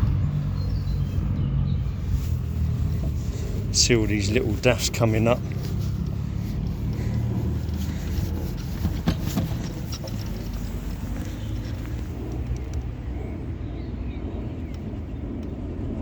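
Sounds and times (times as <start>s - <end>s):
low outdoor rumble: 0.0s - 16.0s
small clicks: 9.9s - 12.9s.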